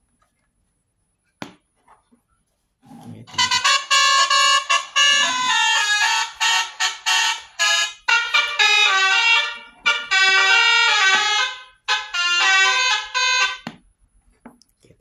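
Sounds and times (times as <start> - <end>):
horn-like melodic tones: 3.2 - 13.7.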